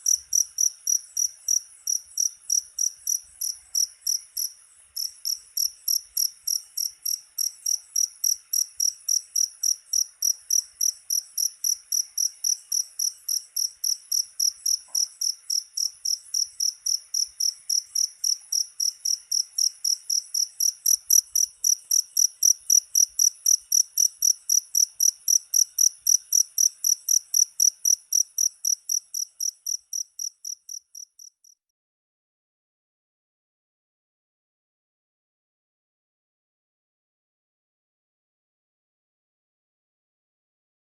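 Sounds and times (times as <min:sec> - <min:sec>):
cricket chirping: 0:00.0 - 0:31.6.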